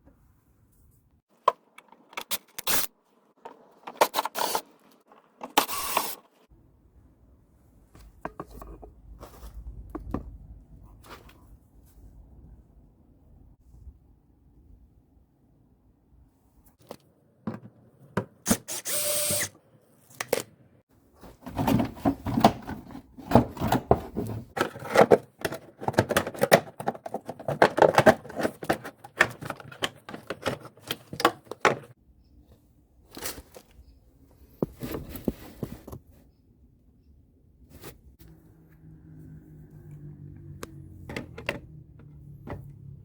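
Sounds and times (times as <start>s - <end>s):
power drill whirring: 5.6s - 6.2s, 18.5s - 19.6s.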